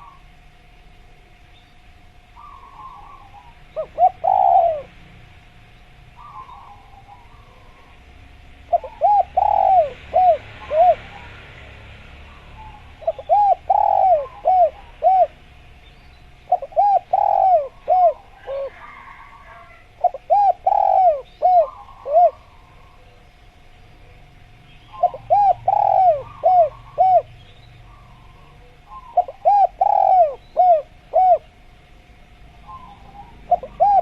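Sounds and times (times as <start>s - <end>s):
dove cooing: 0.0s - 0.4s, 2.4s - 5.2s, 6.1s - 15.5s, 16.4s - 23.4s, 24.0s - 31.8s, 32.5s - 34.0s.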